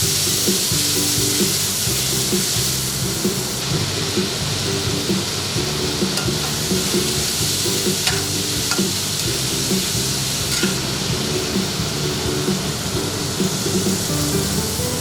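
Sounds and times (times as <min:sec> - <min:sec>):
food sizzling in hot oil: 0:00.0 - 0:15.0
spatula clicking against pan: 0:07.8 - 0:09.0.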